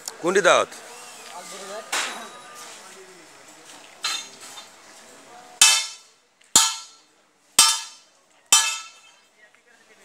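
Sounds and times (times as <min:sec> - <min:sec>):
metallic clangs: 0:04.0 - 0:04.7, 0:05.6 - 0:07.0, 0:07.6 - 0:09.2.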